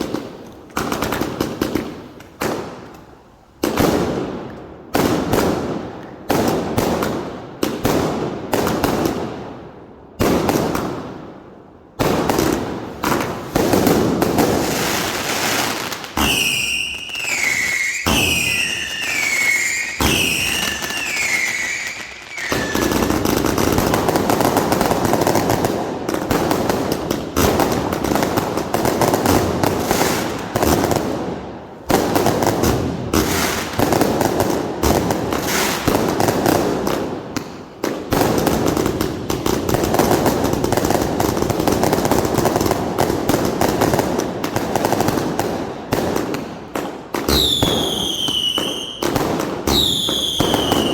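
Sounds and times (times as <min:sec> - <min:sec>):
firework bursts: 0:12.0 - 0:31.0, 0:32.0 - 0:46.5
falling firework whistles: 0:14.6 - 0:23.3, 0:47.3 - 0:49.1, 0:49.7 - 0:50.9.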